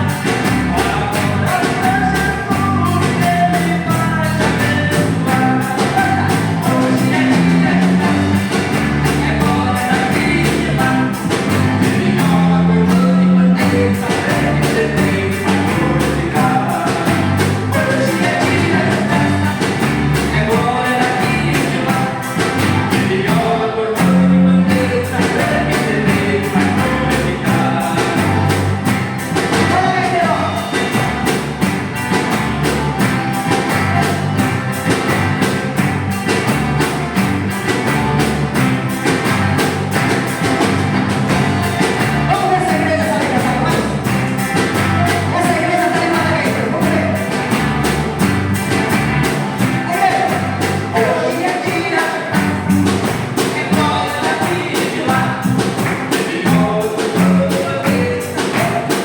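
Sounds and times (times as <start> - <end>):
person singing: 0.0 - 31.5, 41.3 - 47.5, 49.6 - 59.0
rock band playing: 0.0 - 59.0
steady drum beat: 0.0 - 59.0.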